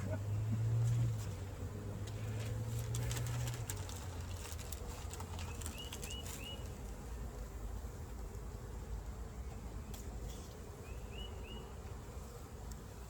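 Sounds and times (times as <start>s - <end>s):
birds chirping: 0.0s - 0.8s, 5.1s - 7.0s, 9.2s - 12.0s
honeybees buzzing: 0.0s - 13.0s.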